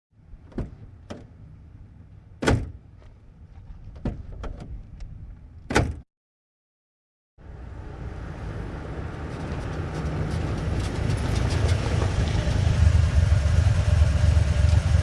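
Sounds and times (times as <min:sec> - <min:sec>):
truck engine rumble: 0:00.2 - 0:05.7, 0:07.4 - 0:15.0
metal clunks and knocks: 0:00.4 - 0:01.4, 0:03.9 - 0:04.8.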